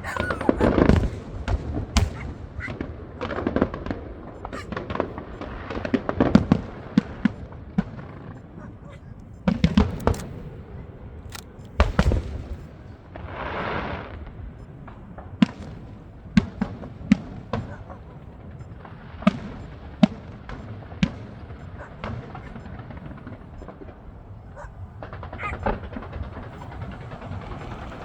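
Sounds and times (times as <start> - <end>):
fireworks bangs and crackles: 0.0 - 28.0.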